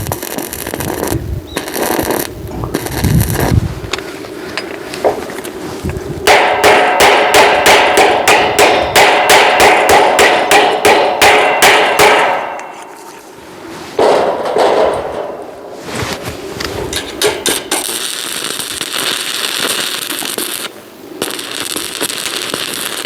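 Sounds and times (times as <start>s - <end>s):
hammer ringing on metal: 6.3s - 13.0s.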